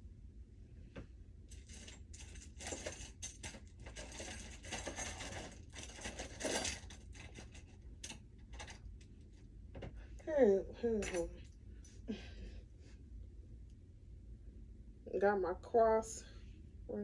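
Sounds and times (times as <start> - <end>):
metal jewelry clinking: 1.5 - 8.8, 10.9 - 12.0.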